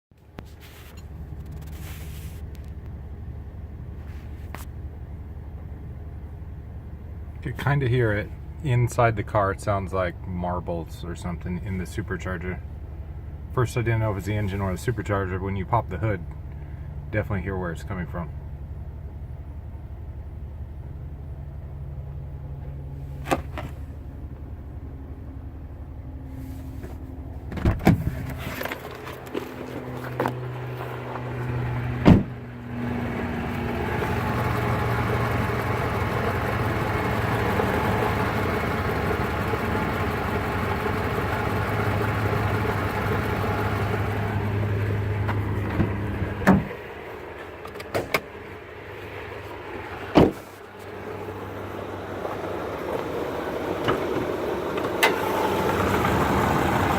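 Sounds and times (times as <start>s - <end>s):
car engine idling: 0.2s - 56.9s
supercharger grinding rattle: 0.4s - 2.9s, 21.2s - 56.9s.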